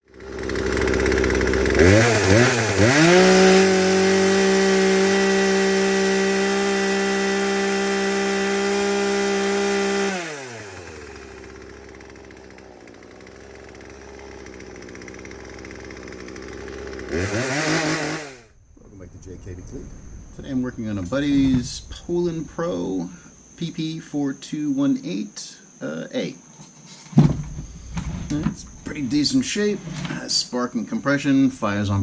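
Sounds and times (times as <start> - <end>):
chainsaw engine revving: 0.0 - 18.6.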